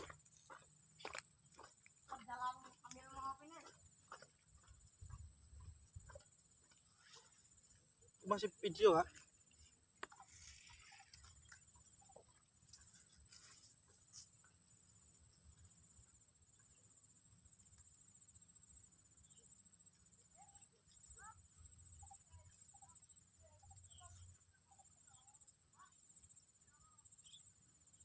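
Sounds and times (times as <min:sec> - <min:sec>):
insect drone: 0:00.0 - 0:28.0
faint chirps: 0:04.6 - 0:28.0.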